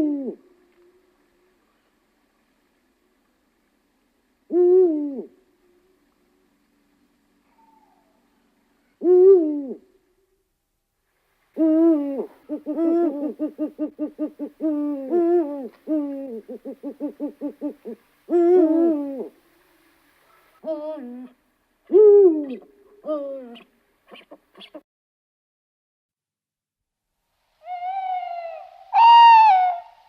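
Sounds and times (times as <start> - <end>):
bird calling: 7.4 - 8.3.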